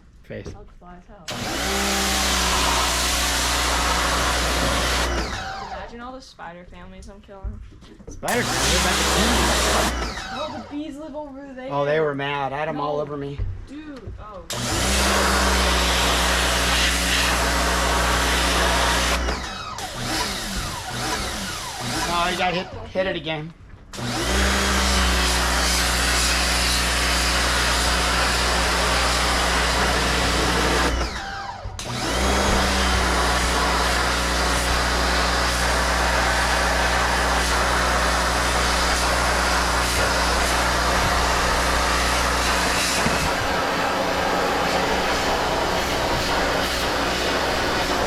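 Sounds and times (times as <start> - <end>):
pressure washer motor humming: 1.3 - 6.0, 8.2 - 11.2, 14.4 - 23.0, 23.9 - 48.0
water jet hissing on deck: 8.3 - 10.8, 32.2 - 48.0.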